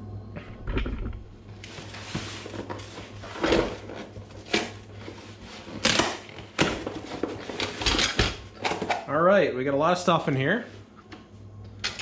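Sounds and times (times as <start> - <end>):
packaging rustling and crinkling: 1.5 - 8.8.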